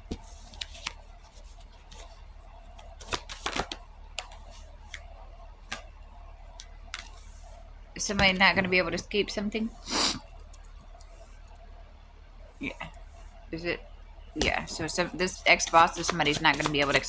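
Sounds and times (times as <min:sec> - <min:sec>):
steady low hum: 0:00.0 - 0:17.0
cards shuffled and drawn: 0:00.1 - 0:02.1, 0:03.0 - 0:04.4, 0:15.5 - 0:17.0.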